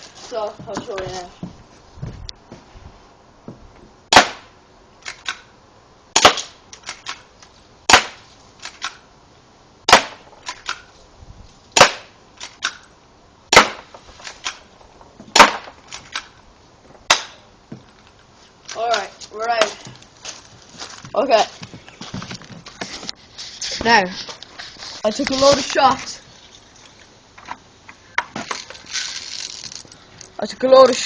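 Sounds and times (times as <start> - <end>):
pistol shots: 4.1 - 4.5, 9.9 - 10.2, 11.8 - 12.1, 15.3 - 15.8.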